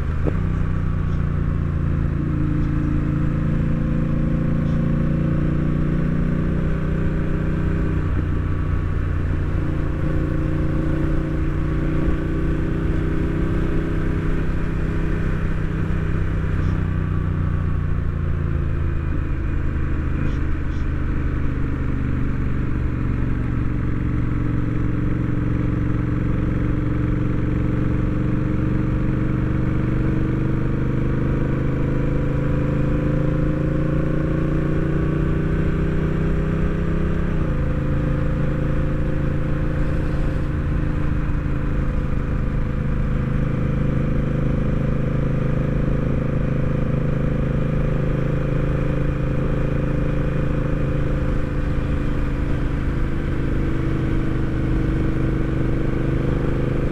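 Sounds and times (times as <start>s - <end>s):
motorcycle engine accelerating: 0.0s - 56.9s.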